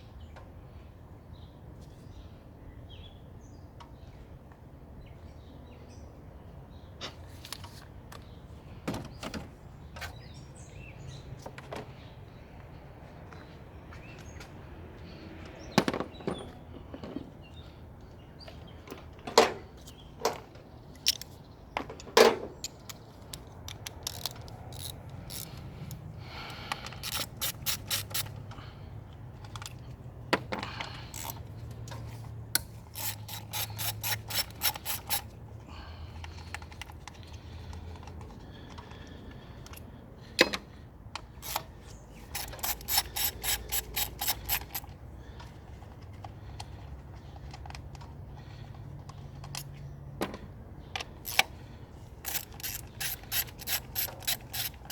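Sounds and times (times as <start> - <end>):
ratchet wrench clicking: 22.6 - 28.5, 31.0 - 31.5, 32.6 - 35.4, 41.4 - 44.9, 51.2 - 51.6, 52.2 - 54.9.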